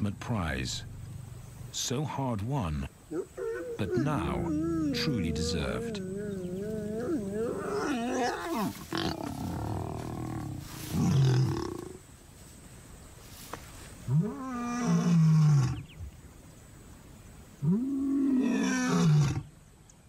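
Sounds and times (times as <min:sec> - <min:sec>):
lion roaring: 0:03.2 - 0:12.0.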